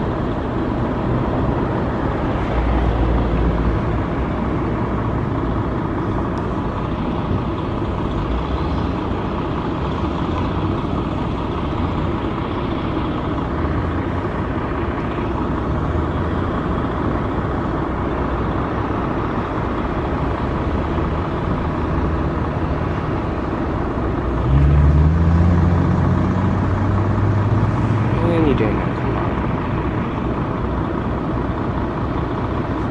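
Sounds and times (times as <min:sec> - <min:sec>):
road traffic noise: 0:00.0 - 0:32.9.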